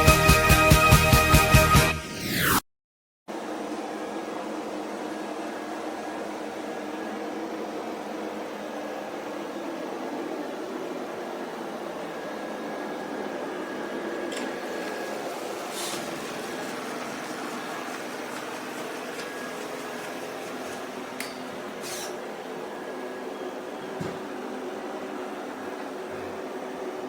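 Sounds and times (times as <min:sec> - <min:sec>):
robot vacuum whirring: 0:10.6 - 0:26.8.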